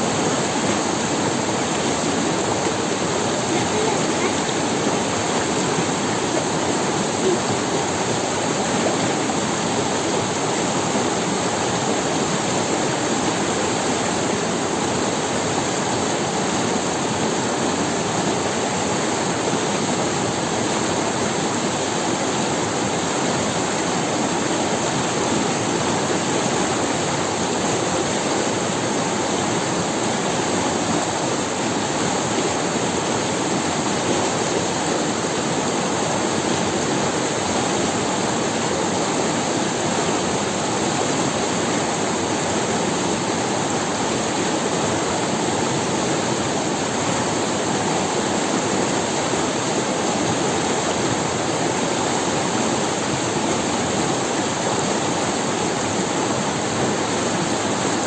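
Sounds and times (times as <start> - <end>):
river rushing over stones: 0.0 - 58.0.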